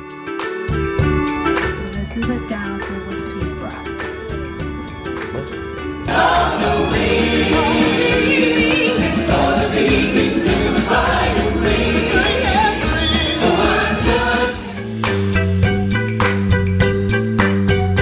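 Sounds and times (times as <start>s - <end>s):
upbeat band music: 0.0s - 18.0s
choir singing: 2.5s - 15.2s.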